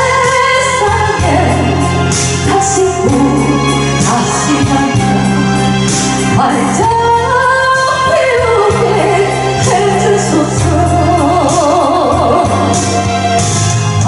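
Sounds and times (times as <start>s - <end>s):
backing track with bass notes: 0.0s - 14.0s.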